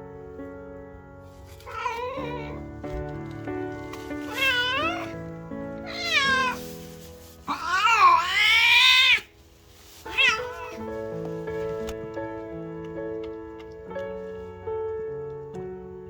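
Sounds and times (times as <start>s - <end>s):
background music: 0.0s - 16.0s
cat meowing: 1.6s - 2.6s, 4.2s - 5.2s, 5.8s - 6.7s, 7.5s - 9.3s, 10.1s - 10.9s.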